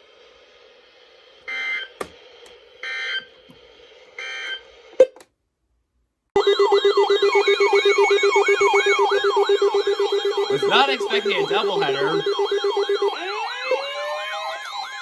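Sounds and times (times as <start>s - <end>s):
weather radio warbling siren: 6.4s - 15.0s
fast-pulsing alert beep: 9.1s - 13.8s.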